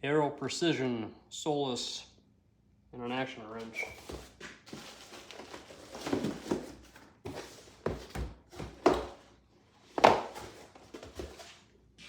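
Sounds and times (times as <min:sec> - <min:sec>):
boxes knocking and thumping: 0:03.7 - 0:11.6.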